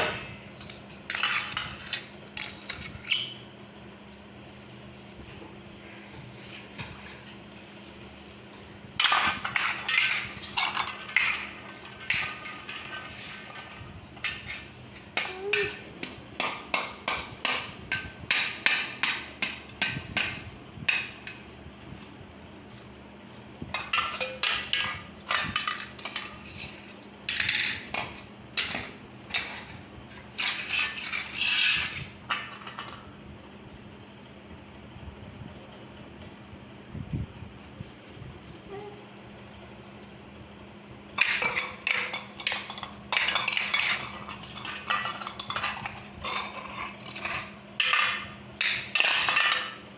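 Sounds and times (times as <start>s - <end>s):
child banging dishes and utensils: 0.0s - 3.4s, 9.0s - 21.4s, 23.7s - 33.1s, 41.2s - 49.8s.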